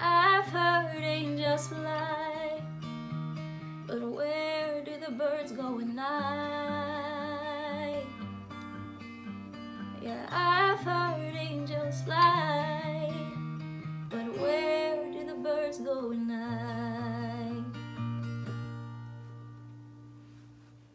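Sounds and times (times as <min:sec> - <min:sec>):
woman singing wordless notes: 0:00.0 - 0:02.6, 0:03.9 - 0:08.2, 0:10.0 - 0:13.4, 0:14.1 - 0:17.8
acoustic guitar: 0:00.0 - 0:20.9.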